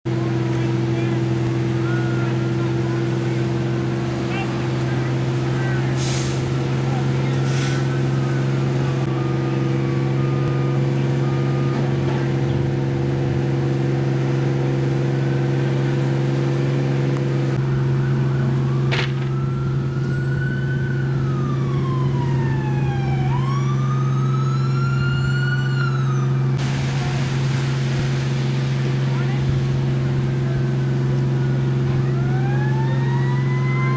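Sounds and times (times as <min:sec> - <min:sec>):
fire engine droning: 0:00.0 - 0:33.9
siren wailing: 0:01.6 - 0:06.0, 0:06.6 - 0:13.2, 0:17.1 - 0:27.2, 0:30.7 - 0:33.9.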